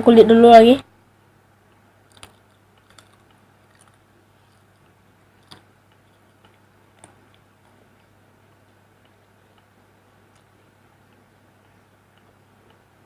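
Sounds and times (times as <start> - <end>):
steady low hum: 0.0 - 13.0
crunchy chewing: 2.1 - 7.8.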